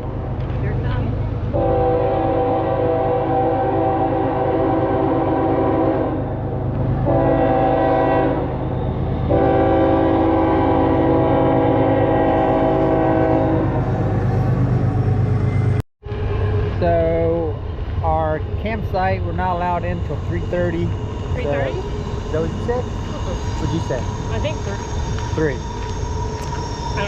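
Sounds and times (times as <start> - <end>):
passing train rumble: 0.0 - 27.0
train horn blasts: 1.5 - 6.3, 7.0 - 8.6, 9.2 - 14.1.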